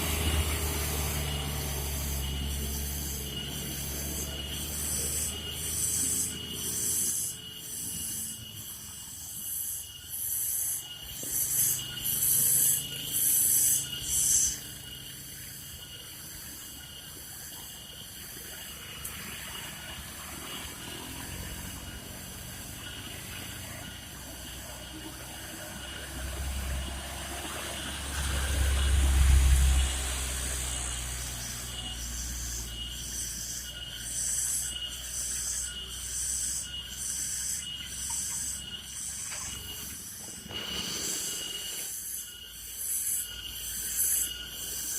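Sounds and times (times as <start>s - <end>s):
truck engine labouring uphill: 0.0s - 6.4s, 19.2s - 32.7s
high pulsing hiss: 0.0s - 44.9s.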